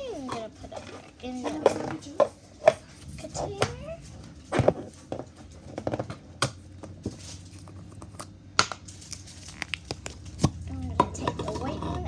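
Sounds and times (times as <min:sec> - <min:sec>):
slime clicking and popping: 0:09.5 - 0:10.6.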